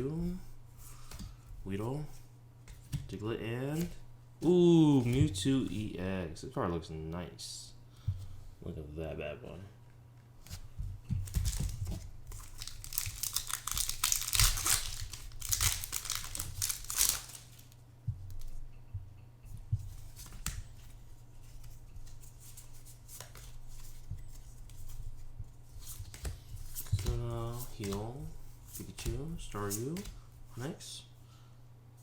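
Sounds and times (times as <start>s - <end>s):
cards clicking and rustling: 11.2s - 17.7s, 28.8s - 30.2s
foil wrapper tearing and crinkling: 12.3s - 17.7s.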